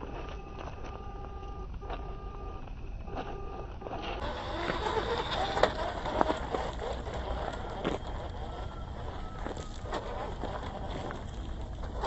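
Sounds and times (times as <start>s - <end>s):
rc car electric motor whining: 3.1s - 12.0s.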